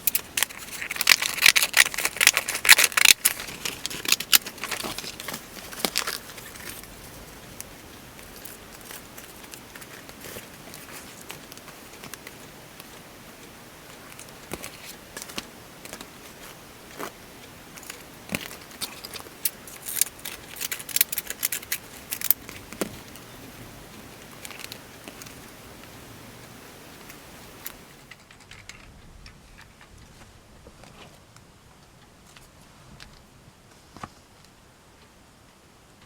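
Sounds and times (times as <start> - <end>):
paper crinkling and rustling: 0.0 - 28.7
background hiss: 0.0 - 36.0.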